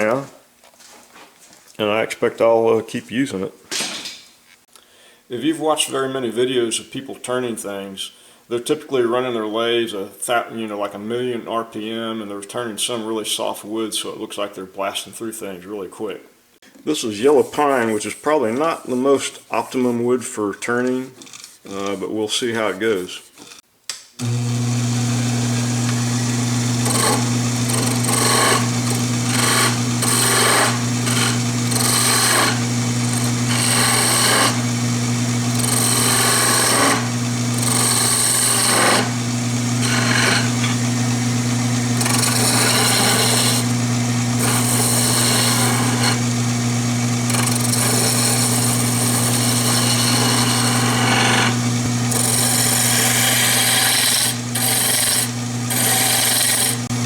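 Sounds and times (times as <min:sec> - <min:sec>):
lathe motor humming: 0:24.2 - 0:57.0
turning tool scraping wood: 0:24.2 - 0:57.0.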